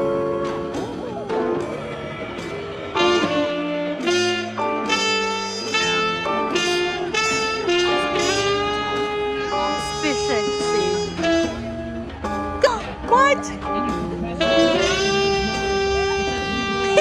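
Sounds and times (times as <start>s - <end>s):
guitar: 0.0s - 17.0s
saxophone-like horn: 1.4s - 12.2s, 14.4s - 17.0s.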